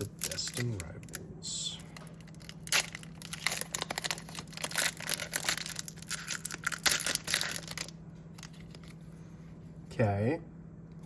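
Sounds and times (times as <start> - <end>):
foil wrapper tearing and crinkling: 0.0 - 1.2, 1.8 - 9.0.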